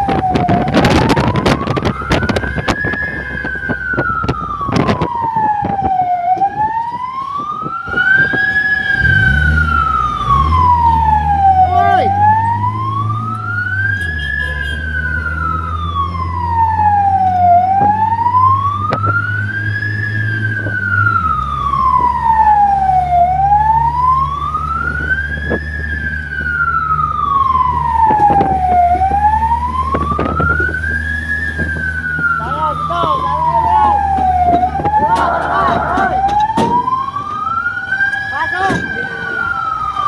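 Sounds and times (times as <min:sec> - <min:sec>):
vehicle engine rumbling: 0:00.0 - 0:40.0
wailing siren: 0:00.0 - 0:40.0.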